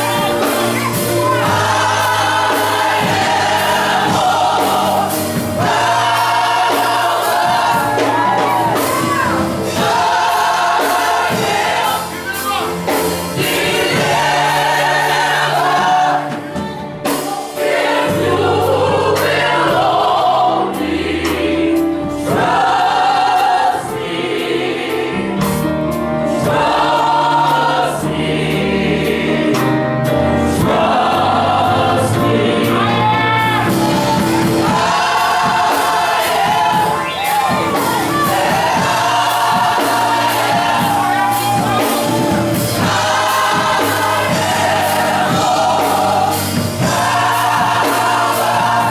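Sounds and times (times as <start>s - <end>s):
gospel choir singing: 0.0s - 48.9s
keyboard: 0.0s - 48.9s
percussion: 0.0s - 48.9s.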